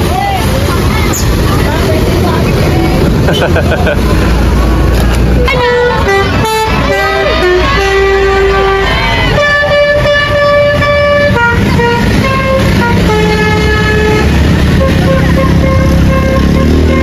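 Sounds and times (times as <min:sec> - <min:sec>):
engine rumble: 0:00.0 - 0:17.0
multi-tone air horn tune: 0:05.4 - 0:17.0.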